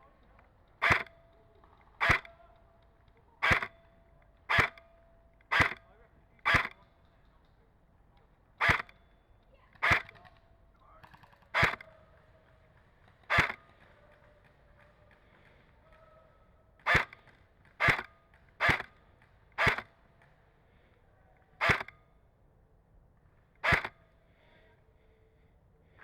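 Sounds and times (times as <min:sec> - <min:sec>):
airsoft rifle shots: 0:00.8 - 0:01.2, 0:02.0 - 0:02.4, 0:03.4 - 0:03.9, 0:04.5 - 0:04.8, 0:05.5 - 0:05.8, 0:06.4 - 0:06.8, 0:08.6 - 0:09.0, 0:09.8 - 0:10.3, 0:11.0 - 0:11.9, 0:13.3 - 0:13.7, 0:16.9 - 0:18.9, 0:19.6 - 0:19.9, 0:21.6 - 0:21.9, 0:23.6 - 0:24.0.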